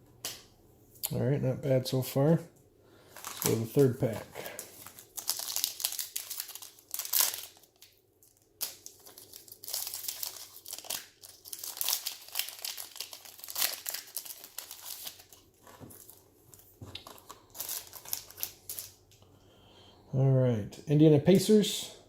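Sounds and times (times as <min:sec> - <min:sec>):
foil wrapper tearing and crinkling: 0:03.1 - 0:19.0.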